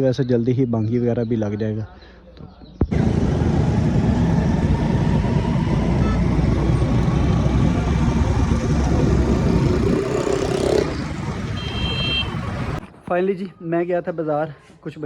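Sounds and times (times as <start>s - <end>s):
vehicle engine and road noise: 2.8s - 13.1s.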